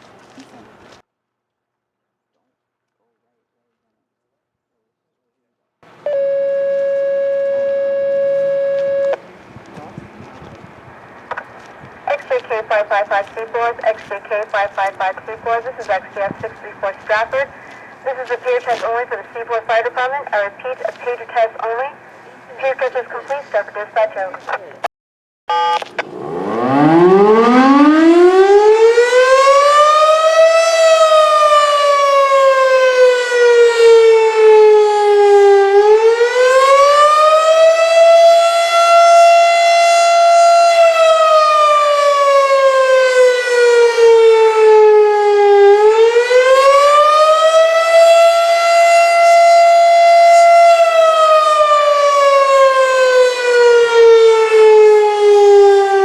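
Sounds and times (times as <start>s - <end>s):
fire siren wailing: 5.9s - 9.3s, 25.5s - 56.0s.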